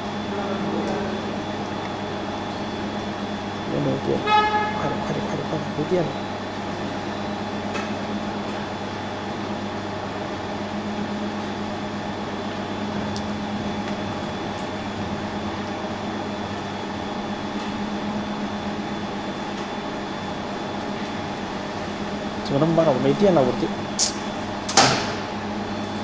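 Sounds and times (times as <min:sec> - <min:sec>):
low drone: 0:00.0 - 0:07.6
faint high whine: 0:00.0 - 0:09.2
fan hum: 0:00.0 - 0:26.0.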